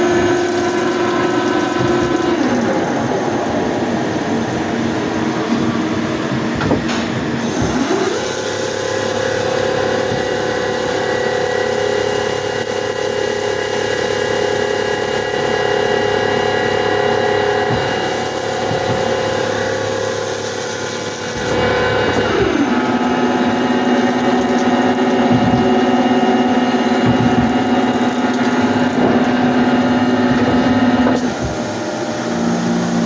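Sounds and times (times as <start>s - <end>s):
lathe whining: 0.0s - 33.0s.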